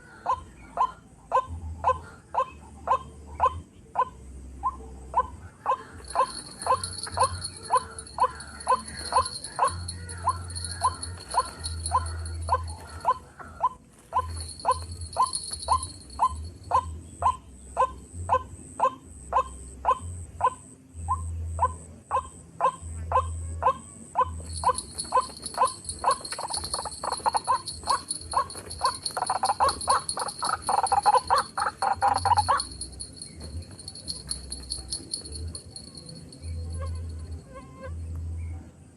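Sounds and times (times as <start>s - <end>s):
insects buzzing: 5.7s - 20.6s, 24.2s - 37.7s.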